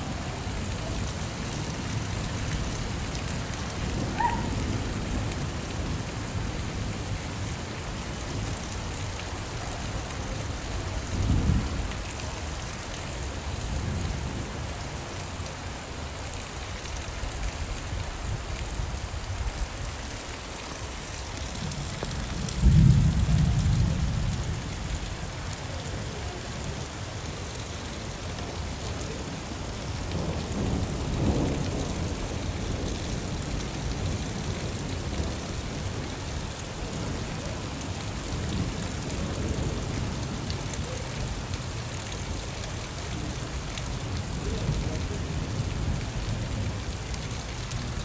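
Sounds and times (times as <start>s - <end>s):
steady rain falling: 0.0s - 48.0s
thunder rumbling: 21.6s - 24.7s.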